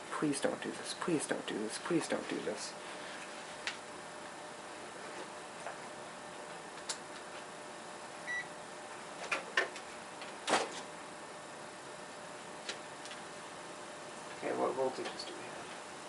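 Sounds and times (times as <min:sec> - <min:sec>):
multimeter beep: 0:08.3 - 0:08.5.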